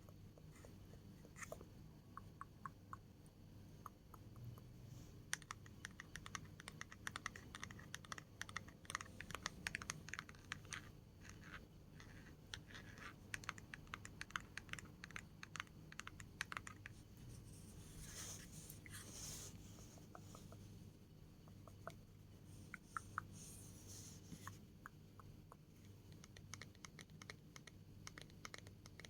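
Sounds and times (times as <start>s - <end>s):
light tapping and clicks: 0.0s - 17.0s, 24.3s - 29.0s.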